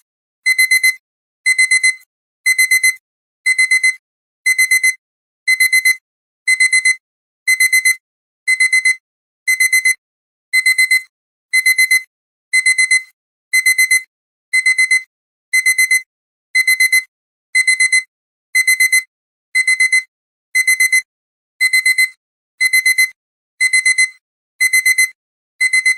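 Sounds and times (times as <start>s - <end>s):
alarm clock beeping: 0.6s - 10.0s, 15.6s - 25.9s.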